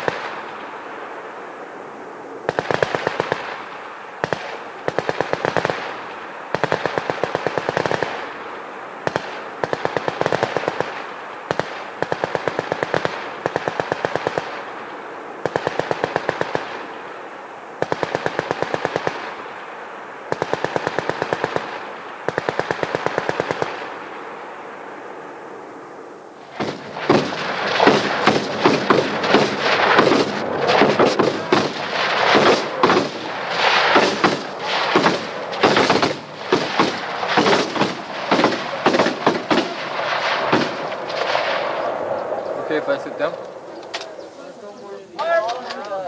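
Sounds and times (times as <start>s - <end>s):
machine gun bursts: 2.5s - 8.4s, 9.0s - 14.7s, 15.4s - 16.8s, 17.8s - 19.4s, 20.3s - 23.9s.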